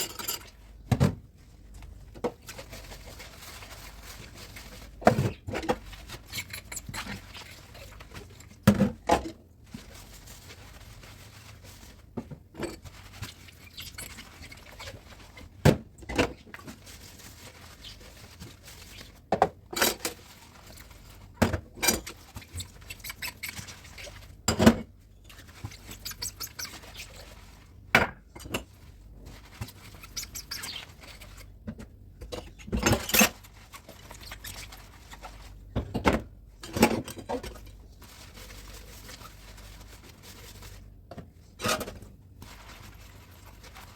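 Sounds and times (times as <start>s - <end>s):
dishes and cutlery clinking: 0.0s - 0.5s.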